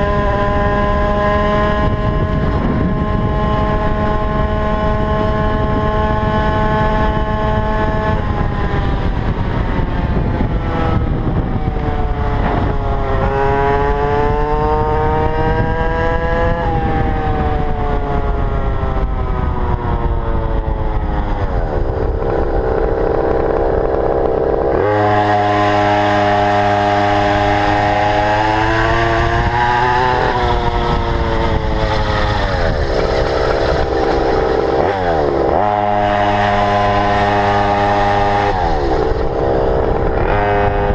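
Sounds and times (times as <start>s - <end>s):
small two-stroke engine revving: 0.0s - 40.9s.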